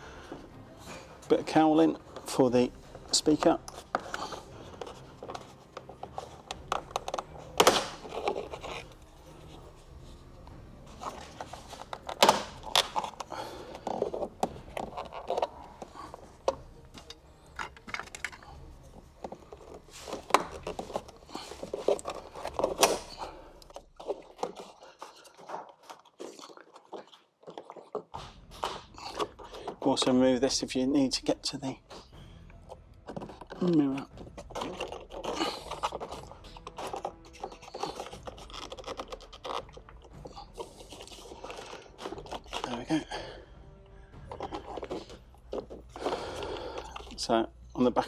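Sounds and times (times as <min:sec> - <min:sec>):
plastic trim clicks and scrapes: 0:03.3 - 0:09.6, 0:11.0 - 0:18.5, 0:19.2 - 0:26.0, 0:33.1 - 0:42.8.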